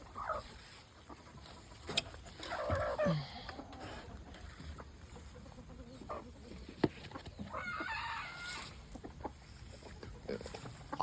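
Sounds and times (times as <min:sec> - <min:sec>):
chickens clucking: 0:00.0 - 0:11.0
young cockerel crowing: 0:07.5 - 0:08.8.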